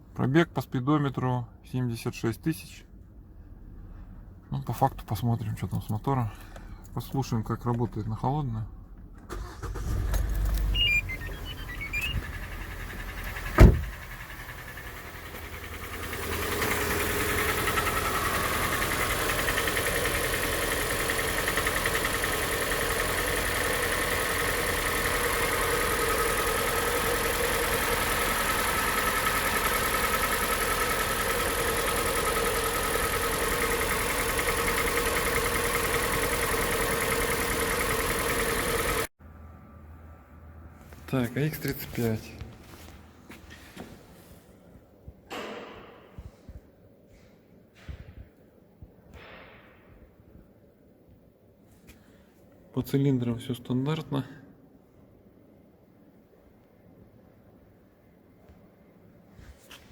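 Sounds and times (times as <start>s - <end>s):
petrol engine running: 9.3s - 39.1s
sharp thump: 13.5s - 14.0s, 45.3s - 46.3s
engine knocking: 14.0s - 39.1s.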